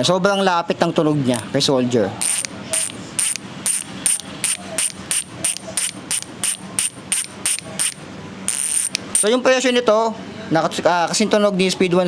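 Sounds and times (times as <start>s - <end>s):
bicycle freehub clicking: 2.2s - 9.3s.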